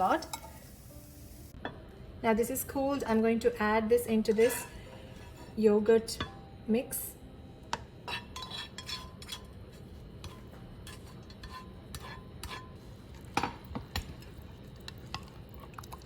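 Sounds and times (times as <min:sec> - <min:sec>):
spoon scraping and clinking metal: 0:00.2 - 0:00.7, 0:08.1 - 0:09.5, 0:10.2 - 0:12.7.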